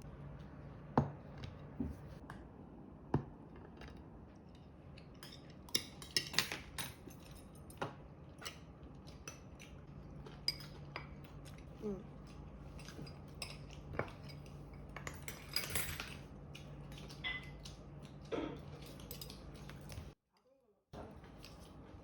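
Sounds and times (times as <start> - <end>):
cutlery clinking against dishes: 12.8 - 16.2, 17.0 - 17.7.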